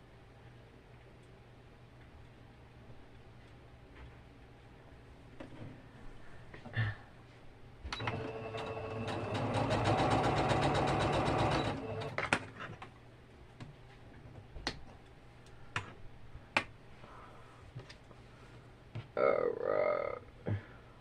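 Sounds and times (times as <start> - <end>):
sewing machine stitching: 8.0 - 12.4.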